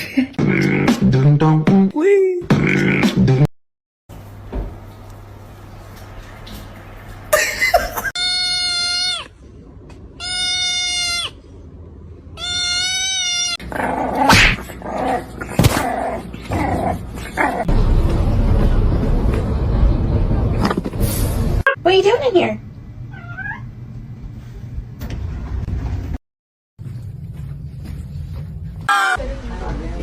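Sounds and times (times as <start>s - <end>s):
cat meowing: 8.2s - 9.3s, 10.2s - 11.4s, 12.4s - 13.6s, 23.1s - 23.7s.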